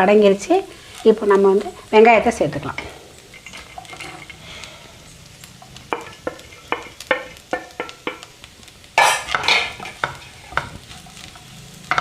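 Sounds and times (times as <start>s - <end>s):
food sizzling in hot oil: 0.0s - 12.0s
metal spoon tapping a pan: 5.6s - 8.3s, 9.0s - 12.0s.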